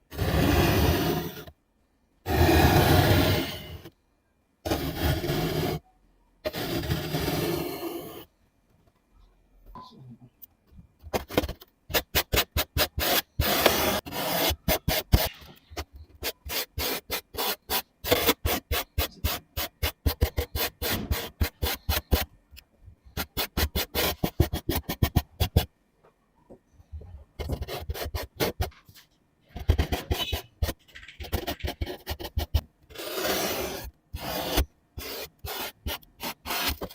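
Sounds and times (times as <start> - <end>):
painting tool scraping: 27.4 - 36.9.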